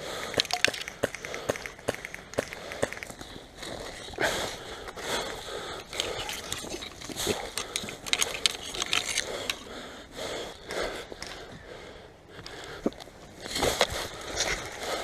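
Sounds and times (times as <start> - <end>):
mechanical clicks and scraping: 5.8 - 9.7.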